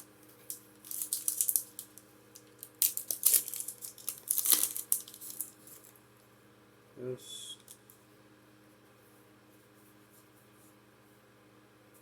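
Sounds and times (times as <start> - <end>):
foil wrapper crinkling and tearing: 0.4 - 6.0.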